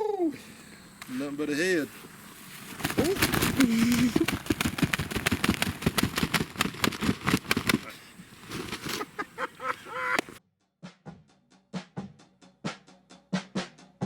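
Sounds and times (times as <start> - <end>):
crackling and rustling: 1.0 - 10.4.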